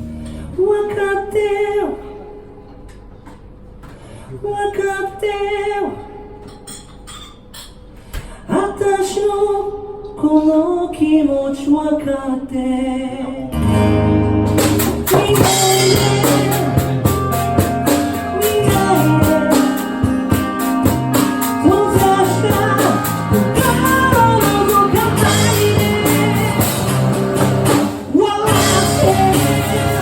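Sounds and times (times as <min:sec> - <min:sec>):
rock band music: 0:13.6 - 0:30.0
person singing: 0:15.0 - 0:27.5, 0:28.1 - 0:30.0.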